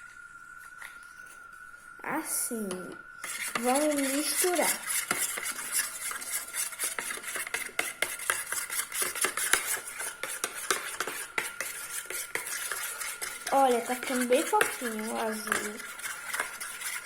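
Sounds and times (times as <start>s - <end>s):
spoon stirring slime: 2.5s - 17.0s
spoon scraping container: 3.2s - 17.0s.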